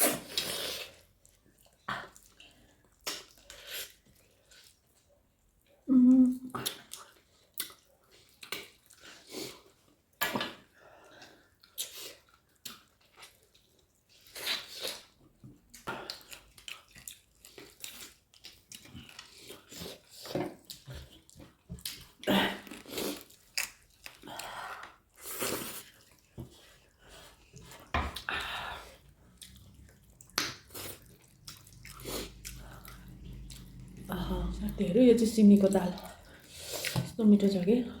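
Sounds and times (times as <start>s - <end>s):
person chewing food: 0.0s - 5.8s, 6.5s - 37.2s.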